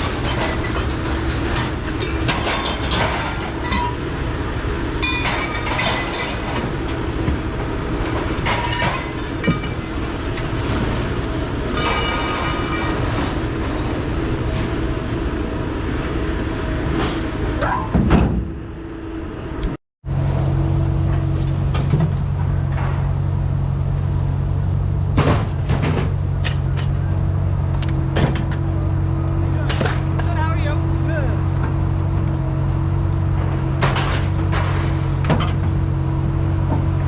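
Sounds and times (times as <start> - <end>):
mechanical rumble: 0.0 - 37.0
metallic rattling and clanking: 7.6 - 10.6.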